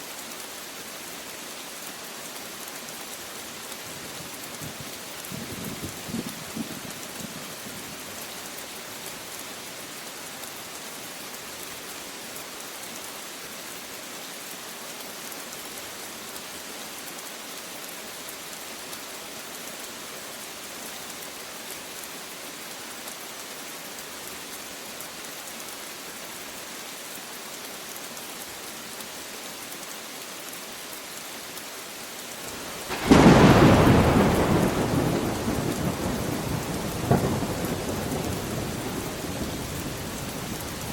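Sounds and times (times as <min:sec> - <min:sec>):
steady rain: 0:00.0 - 0:40.9
thunderclap rumbling: 0:32.8 - 0:40.2.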